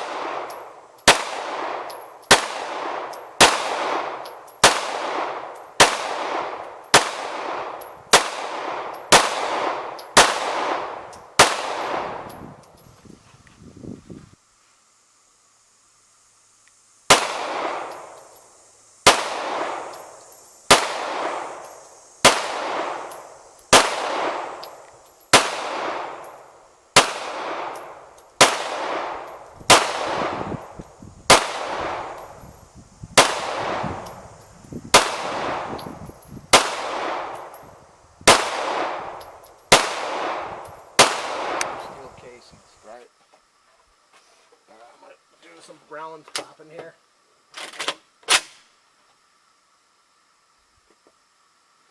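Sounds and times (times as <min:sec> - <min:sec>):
gunshots with long echo: 0:00.0 - 0:12.2, 0:17.1 - 0:18.1, 0:19.0 - 0:19.9, 0:20.7 - 0:21.6, 0:22.2 - 0:23.1, 0:23.7 - 0:24.6, 0:25.3 - 0:26.2, 0:27.0 - 0:30.6, 0:31.3 - 0:32.2, 0:33.2 - 0:34.1, 0:34.9 - 0:35.8, 0:36.5 - 0:37.4, 0:38.3 - 0:42.0.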